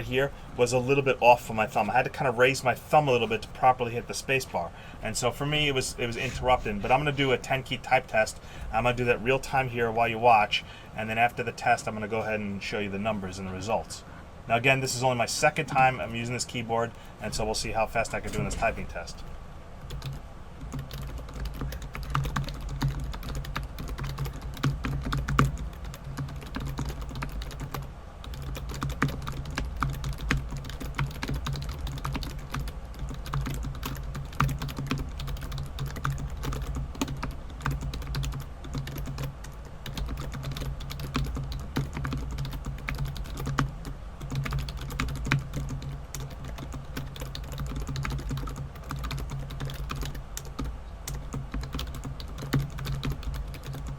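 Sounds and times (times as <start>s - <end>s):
steady low hum: 0.0s - 53.9s
fast keyboard typing: 19.8s - 53.9s.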